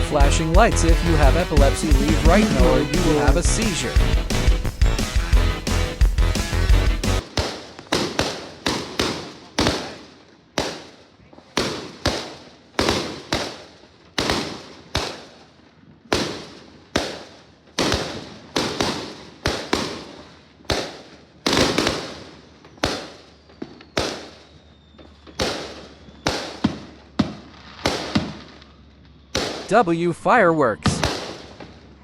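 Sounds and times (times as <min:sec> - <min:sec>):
fireworks bursting: 0:00.0 - 0:09.9, 0:25.3 - 0:28.6, 0:29.4 - 0:32.0.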